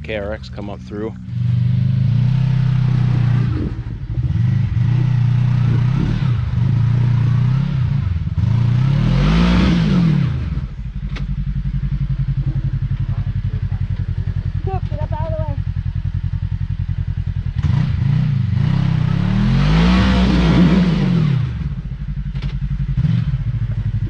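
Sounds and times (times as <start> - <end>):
engine idling: 0.0 - 8.9, 10.3 - 18.2, 21.5 - 24.0
utility vehicle engine revving: 0.0 - 24.0.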